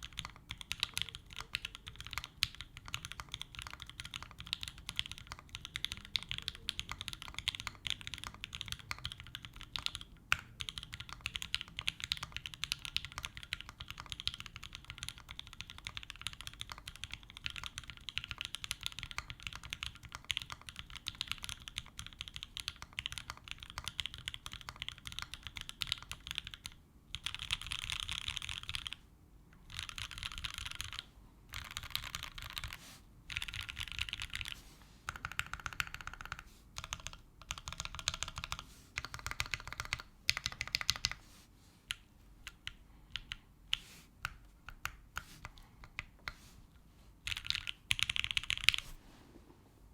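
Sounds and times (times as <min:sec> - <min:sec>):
mechanical keyboard typing: 0:00.0 - 0:29.0, 0:29.6 - 0:41.2, 0:47.2 - 0:48.9.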